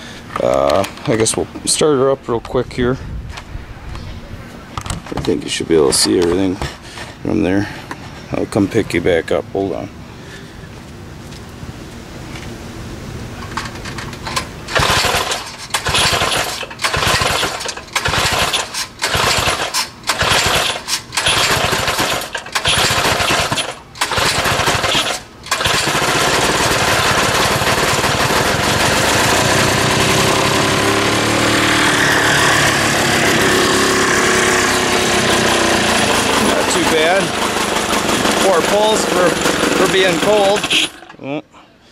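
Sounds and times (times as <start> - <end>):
snowblower engine starting: 14.0 - 41.2.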